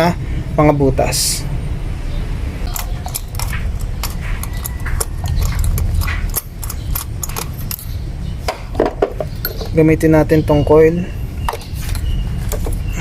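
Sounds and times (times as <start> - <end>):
steady low hum: 0.0 - 13.0
ratchet clicking: 2.7 - 8.0.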